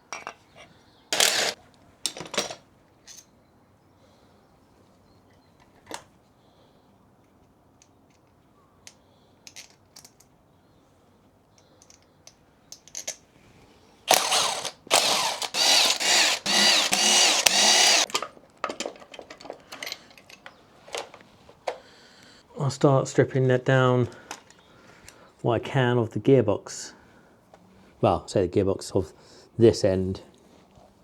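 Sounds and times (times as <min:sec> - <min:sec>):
small power tool whirring: 0:01.1 - 0:01.6, 0:14.1 - 0:18.1
tools clicking on metal: 0:01.2 - 0:03.3, 0:11.6 - 0:13.2, 0:14.1 - 0:21.0.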